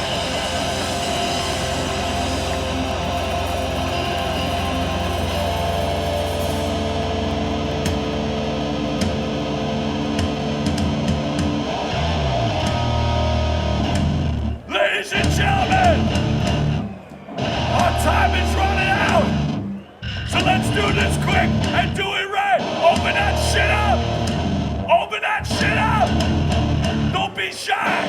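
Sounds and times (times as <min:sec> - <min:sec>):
bass slide: 0:00.0 - 0:14.6, 0:15.2 - 0:22.0, 0:23.0 - 0:27.2
distorted electric guitars: 0:00.0 - 0:28.0.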